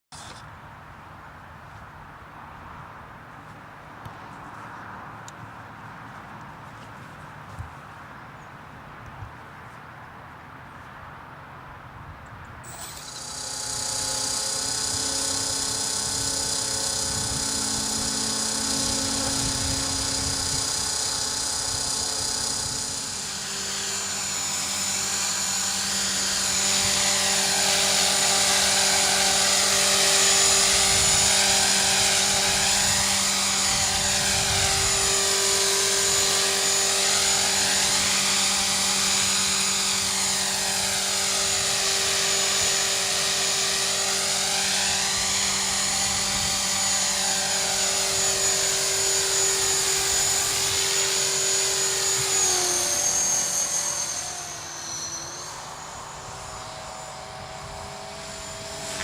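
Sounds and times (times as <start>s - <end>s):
rc helicopter rotor whine: 0.1s - 0.5s, 12.6s - 59.0s
wind on microphone: 14.8s - 23.2s, 30.5s - 35.4s, 44.9s - 47.1s.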